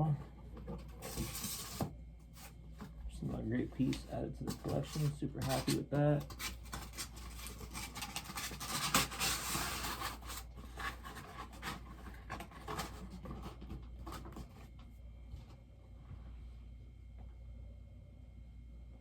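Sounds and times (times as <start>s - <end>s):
packaging rustling and scraping: 0.0s - 14.9s.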